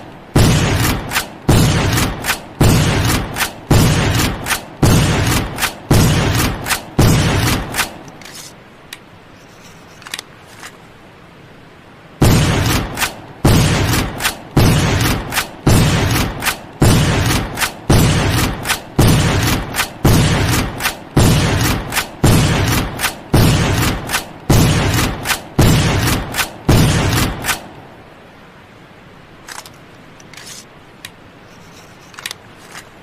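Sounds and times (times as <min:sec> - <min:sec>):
rifle shots: 0:00.4 - 0:08.5, 0:12.2 - 0:27.8
rifle lever clicks: 0:07.8 - 0:09.0, 0:10.0 - 0:10.8, 0:29.5 - 0:30.7, 0:32.1 - 0:32.9.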